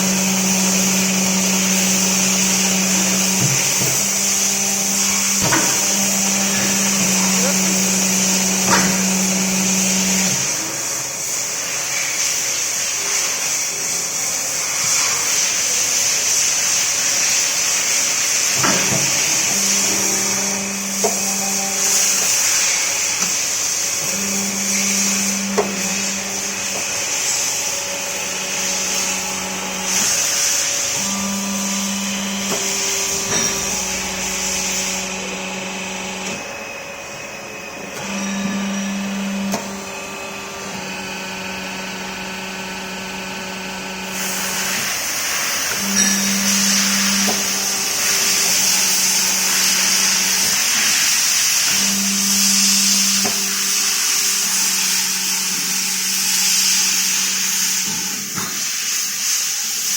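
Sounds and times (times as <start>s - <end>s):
machine high hiss: 0.0s - 59.9s
low machine hum: 18.4s - 58.4s.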